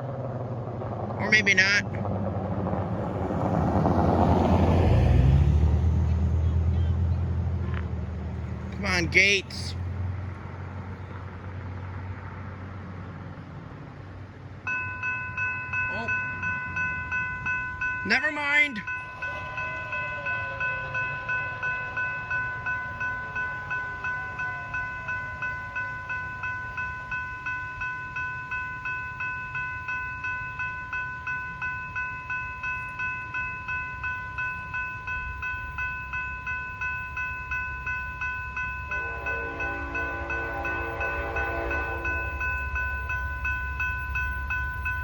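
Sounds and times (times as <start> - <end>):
train rumble: 0.0 - 45.0
crossing bell ringing: 8.5 - 9.9, 14.6 - 45.0
locomotive horn: 18.1 - 25.9, 38.6 - 43.1.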